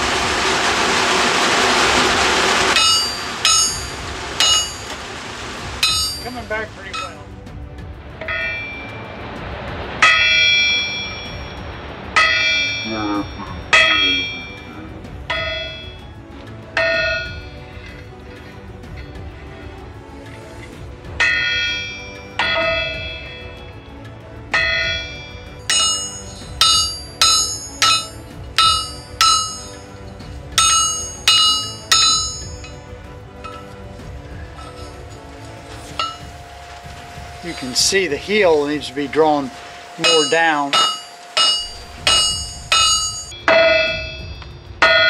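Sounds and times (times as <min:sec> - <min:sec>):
hammer ringing on metal: 0:02.8 - 0:04.9, 0:05.8 - 0:06.3, 0:24.6 - 0:29.9, 0:30.6 - 0:32.8, 0:40.0 - 0:45.0.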